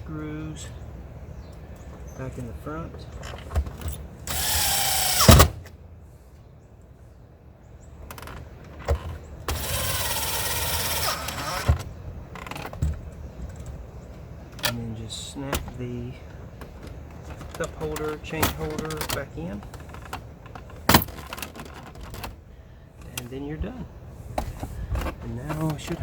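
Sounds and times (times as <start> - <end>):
drill click: 4.3 - 5.6, 9.5 - 11.8
power drill driving screws: 4.3 - 5.6, 9.5 - 11.8
handling knocks: 16.6 - 22.4.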